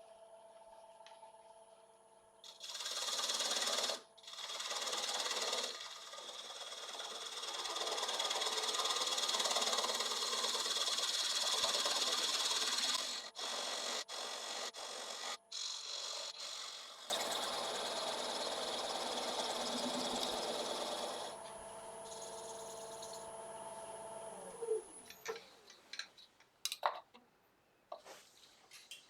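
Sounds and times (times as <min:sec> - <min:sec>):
lathe tool cutting wood: 0:02.6 - 0:24.6.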